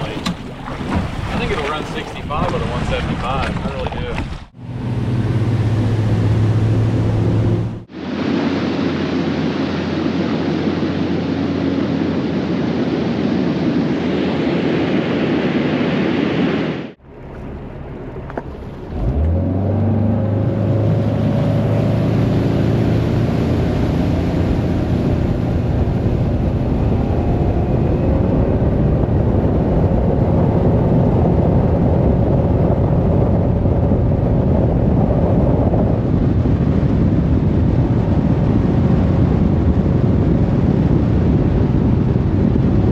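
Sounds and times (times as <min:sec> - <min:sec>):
outboard motor running: 0:00.0 - 0:07.9, 0:17.0 - 0:31.8
water rushing: 0:00.0 - 0:13.3
wind rush: 0:00.0 - 0:17.0, 0:17.6 - 0:42.9.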